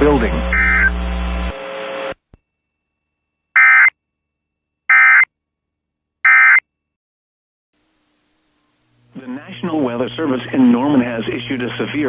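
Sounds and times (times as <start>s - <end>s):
broadcast static: 0.0s - 2.2s, 7.8s - 12.0s.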